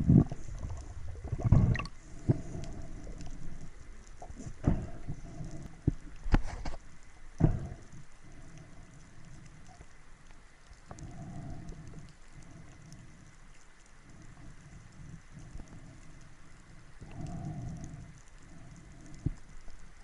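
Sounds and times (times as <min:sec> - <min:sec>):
water splashing and sloshing: 0:00.0 - 0:20.0.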